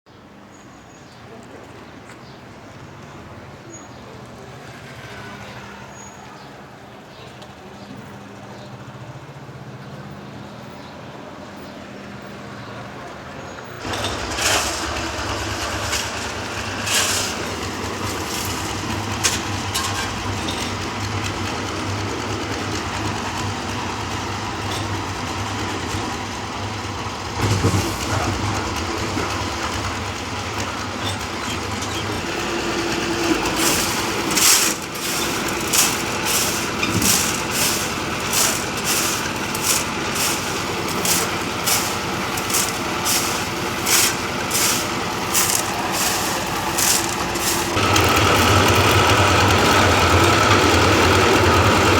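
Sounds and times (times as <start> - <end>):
knocking and clattering: 13.8 - 20.9, 33.2 - 48.2
concrete mixer rumbling: 13.8 - 51.9.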